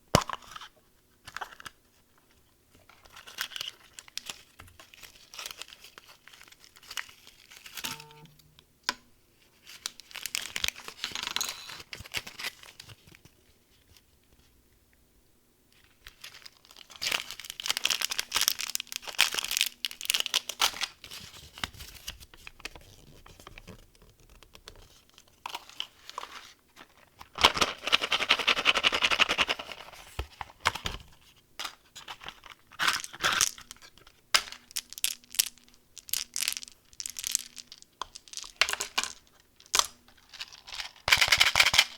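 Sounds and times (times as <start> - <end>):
wrappers crinkling: 2.9 - 7.8, 9.6 - 13.1, 16.0 - 28.2.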